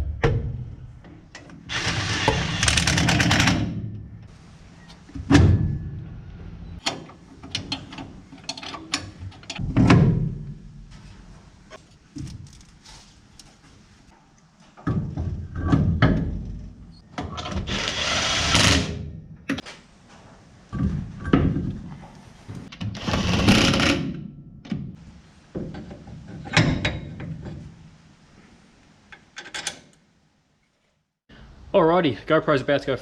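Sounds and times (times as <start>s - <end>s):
power tool bursts: 1.7s - 3.0s.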